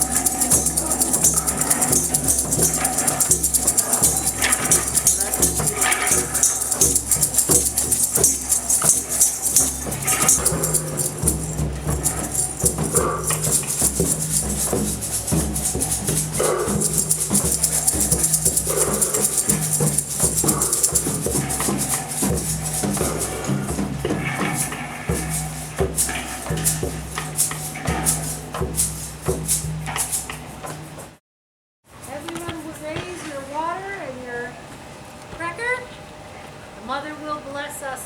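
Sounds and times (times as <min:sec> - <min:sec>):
low sustained tone: 0:00.0 - 0:29.1
fast shaker rhythm: 0:00.0 - 0:31.2, 0:32.0 - 0:34.0.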